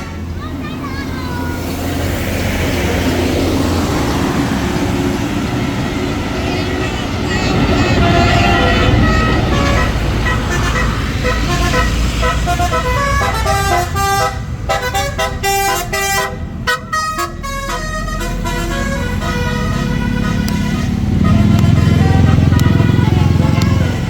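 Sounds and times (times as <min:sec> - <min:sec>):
bus engine rumble: 0:00.0 - 0:24.0
musical bus horn tune: 0:06.3 - 0:24.0.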